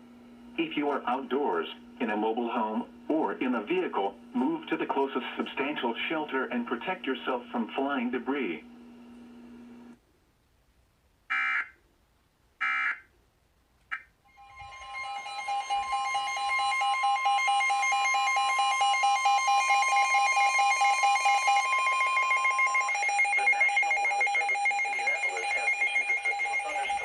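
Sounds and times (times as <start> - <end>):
two-pitch electronic alarm tone: 11.3 - 11.8, 12.6 - 13.0, 13.9 - 27.0.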